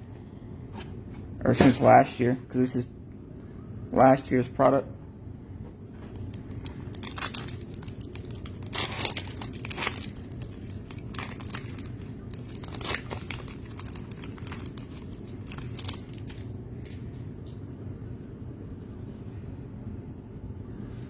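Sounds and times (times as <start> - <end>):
steady low hum: 0.0 - 21.0
wrappers tearing and crinkling: 6.1 - 17.2.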